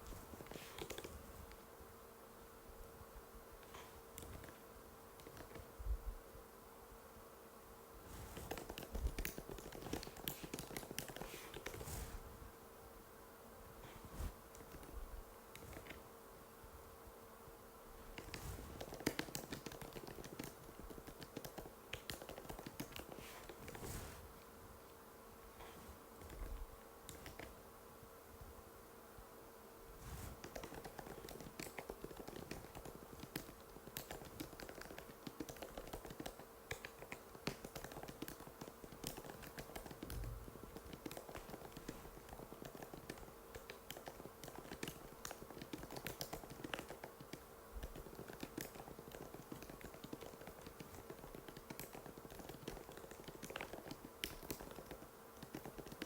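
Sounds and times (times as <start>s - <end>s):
faint steady hum: 0.0s - 56.0s
keyboard typing clicks: 18.2s - 23.8s, 30.4s - 56.0s.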